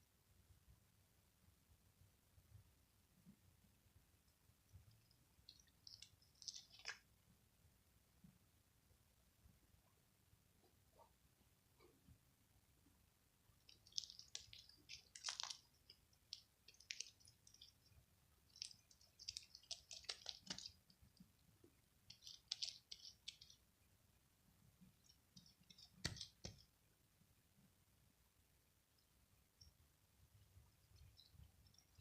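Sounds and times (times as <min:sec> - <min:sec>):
slime squishing by hand: 0:04.8 - 0:07.2, 0:13.5 - 0:23.8, 0:24.8 - 0:26.8.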